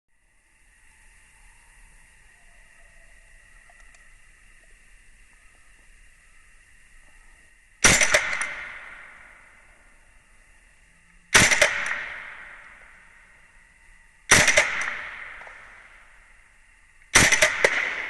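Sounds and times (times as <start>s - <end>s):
airsoft pistol shot: 7.8s - 9.2s, 11.3s - 12.8s, 14.3s - 15.8s, 17.1s - 18.0s.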